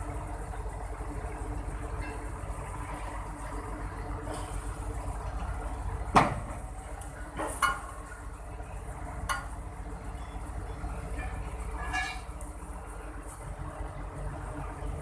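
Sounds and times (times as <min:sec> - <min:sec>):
low engine rumble: 0:00.0 - 0:15.0
sharp metallic clanks: 0:07.4 - 0:08.1, 0:09.2 - 0:09.6, 0:11.2 - 0:12.3.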